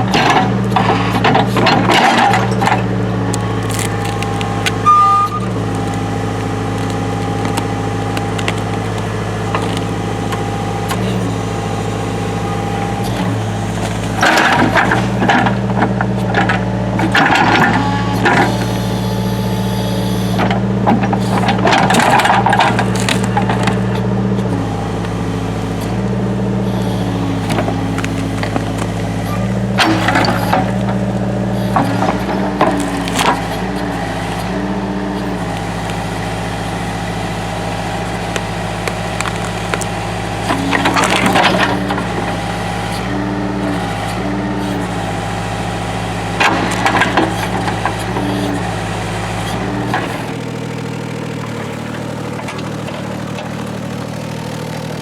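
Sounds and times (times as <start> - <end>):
heavy machine engine running: 0.0 - 55.0
wood and brush cracking: 0.1 - 19.0, 20.4 - 34.5, 35.2 - 42.9.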